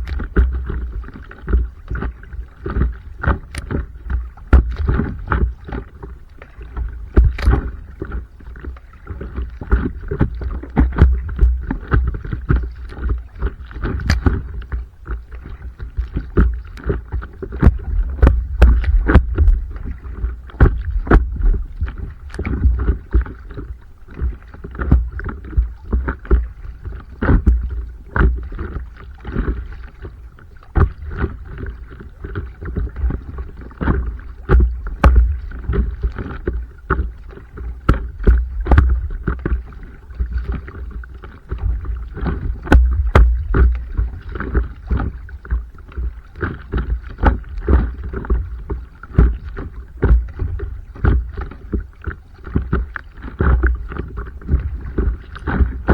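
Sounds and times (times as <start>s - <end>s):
paddle splashing in water: 0.0s - 55.9s
low rumble: 41.6s - 44.4s.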